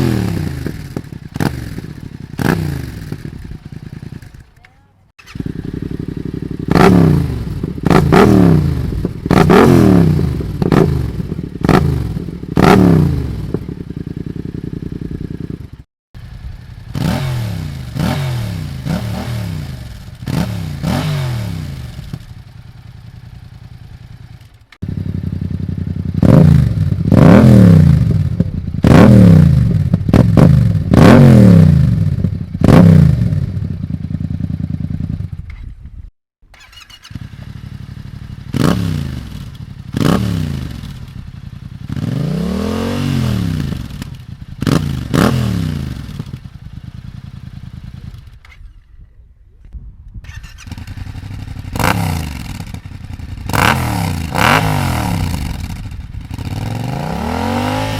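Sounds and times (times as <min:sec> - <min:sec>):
engine revving in quick blips: 0:00.0 - 0:04.0, 0:05.2 - 0:13.6, 0:16.9 - 0:22.3, 0:36.5 - 0:41.2, 0:41.9 - 0:46.5, 0:50.2 - 0:57.9.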